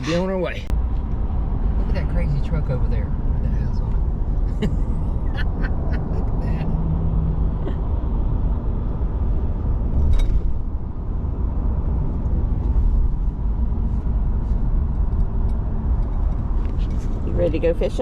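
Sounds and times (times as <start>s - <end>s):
truck engine and road rumble: 0.0s - 18.0s.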